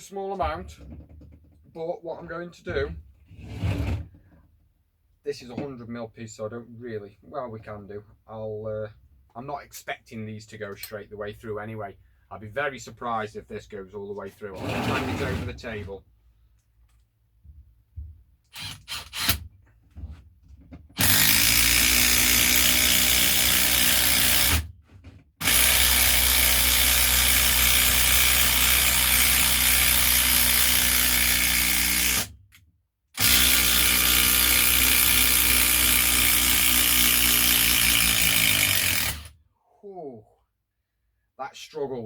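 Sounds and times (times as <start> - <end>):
impact driver hammering screw into wood: 21.0 - 24.7, 25.4 - 32.3, 33.2 - 39.3.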